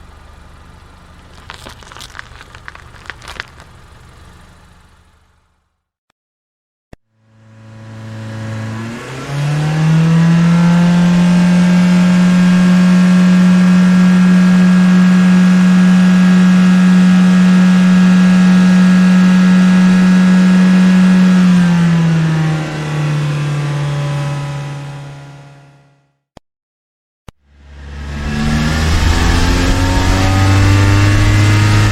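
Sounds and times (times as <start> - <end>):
car engine running: 0.0 - 5.7, 7.2 - 26.0, 27.5 - 31.9.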